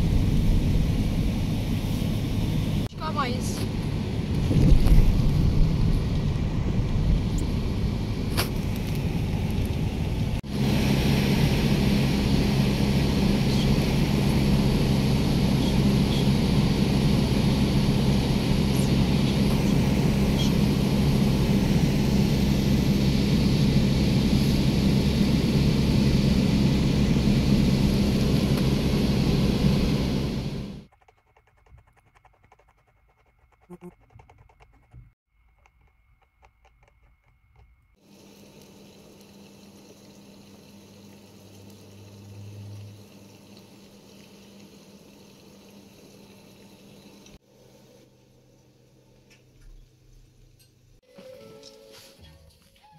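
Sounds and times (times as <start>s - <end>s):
rushing outdoor noise: 0.0s - 30.8s
vehicle engine hum with road noise: 0.0s - 31.0s.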